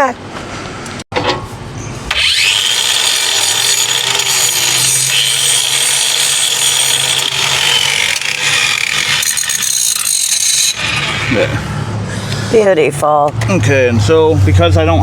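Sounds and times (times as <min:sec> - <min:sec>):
angle grinder grinding metal: 0:02.1 - 0:11.8.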